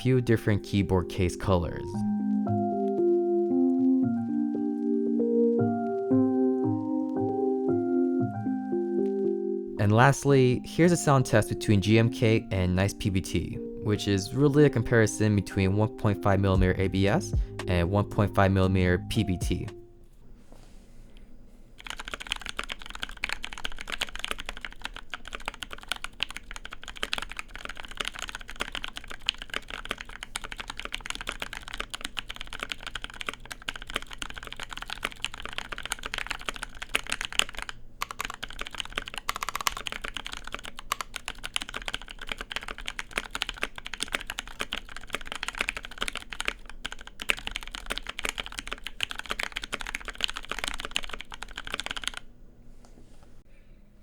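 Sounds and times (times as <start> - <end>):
typing on mechanical keyboard: 21.8 - 52.3.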